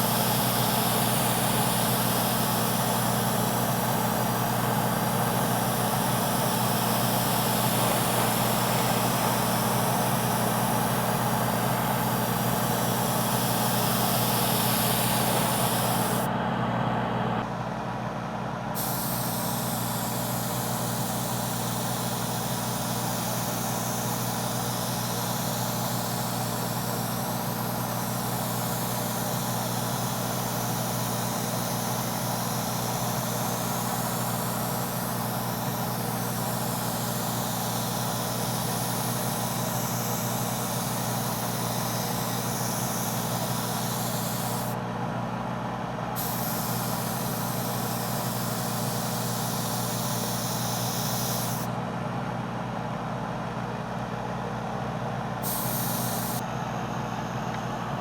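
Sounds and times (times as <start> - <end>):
airbrush spraying hiss: 0.0 - 16.3, 18.8 - 44.8, 46.2 - 51.7, 55.4 - 56.5
air compressor hum: 0.0 - 58.0.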